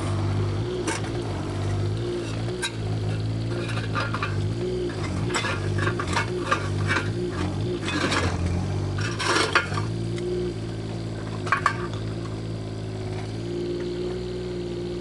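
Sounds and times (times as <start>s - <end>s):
diesel engine running: 0.0s - 15.0s
debris crunching and clinking: 2.2s - 10.0s, 11.2s - 12.1s.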